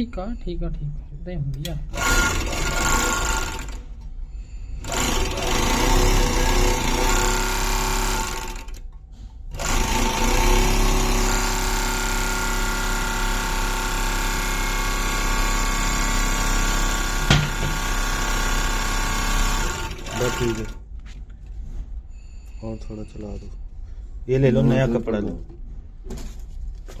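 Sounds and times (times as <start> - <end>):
sewing machine running fast: 1.9 - 3.9, 4.8 - 8.8, 9.5 - 20.8.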